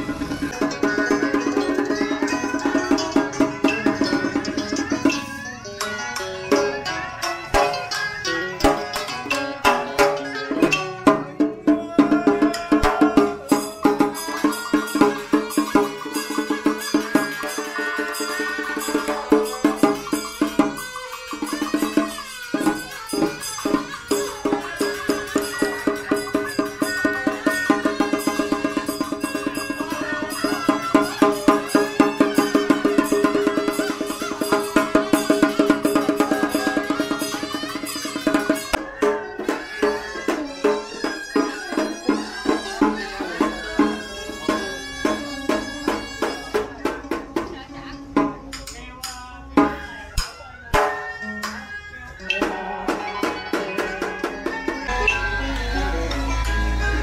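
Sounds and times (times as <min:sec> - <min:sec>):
fast struck or plucked notes: 0:00.0 - 0:48.7
steady percussion strikes: 0:00.0 - 0:57.0
reedy wind instrument melody: 0:11.7 - 0:47.0, 0:54.8 - 0:57.0
sliding melody line: 0:54.8 - 0:57.0.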